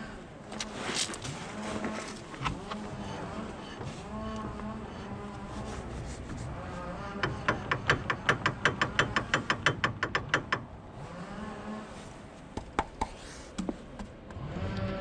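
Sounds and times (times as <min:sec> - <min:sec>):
car running noise: 0:00.0 - 0:12.4
rapid drive shaft clicking: 0:06.5 - 0:10.9.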